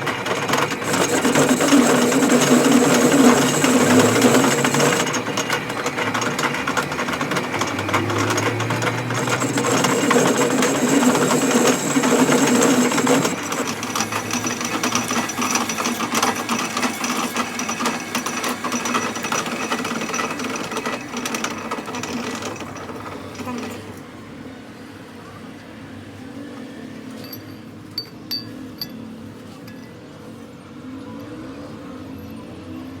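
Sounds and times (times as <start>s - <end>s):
mechanical rattling of metalworking: 0.0s - 24.0s.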